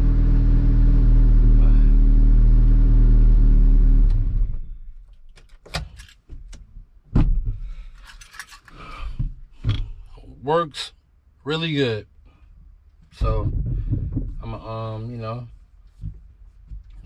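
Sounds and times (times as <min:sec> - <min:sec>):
car engine running: 0:00.0 - 0:04.6.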